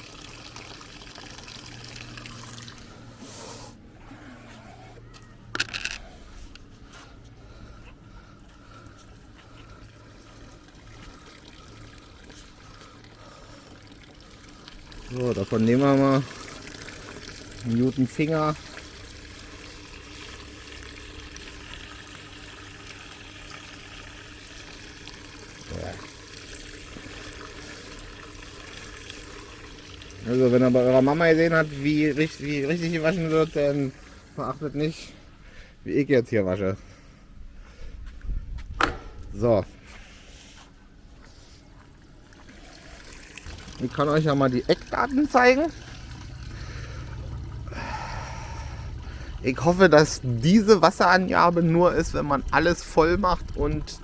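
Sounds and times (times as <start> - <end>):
water rushing into washing machine: 0.0 - 3.0, 9.9 - 35.1, 42.2 - 54.0
steady low hum: 1.8 - 53.9.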